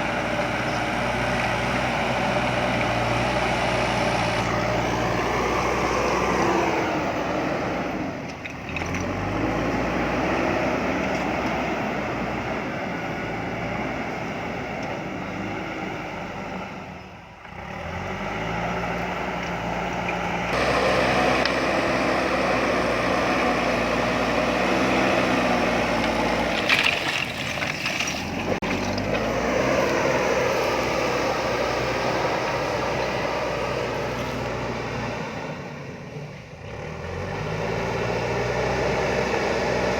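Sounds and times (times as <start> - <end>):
diesel engine under load: 0.0 - 39.9.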